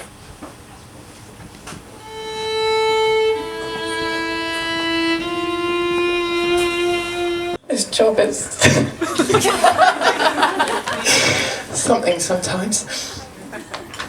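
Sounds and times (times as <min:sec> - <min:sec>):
violin long bowed notes: 0:02.0 - 0:07.6.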